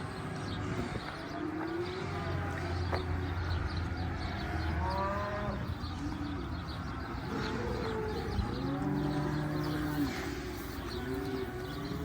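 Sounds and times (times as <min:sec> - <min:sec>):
cattle mooing: 0:04.4 - 0:05.8, 0:07.1 - 0:12.0.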